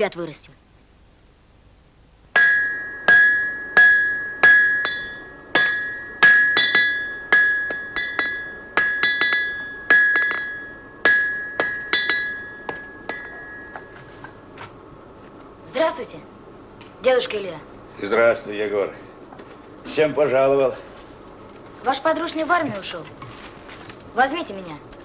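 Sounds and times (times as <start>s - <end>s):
hammer striking an anvil: 2.4s - 14.4s.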